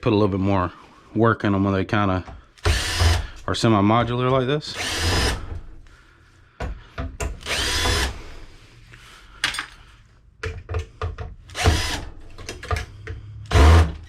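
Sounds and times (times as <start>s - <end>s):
power drill whining: 2.6s - 3.4s, 4.7s - 5.8s, 7.4s - 8.5s, 11.5s - 12.4s, 13.5s - 14.0s.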